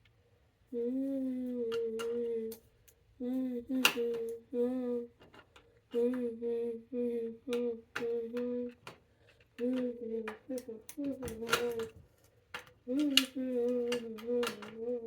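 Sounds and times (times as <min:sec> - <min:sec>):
person humming: 0:00.7 - 0:02.6, 0:03.2 - 0:05.2, 0:05.9 - 0:08.9, 0:09.6 - 0:12.0, 0:12.9 - 0:15.0.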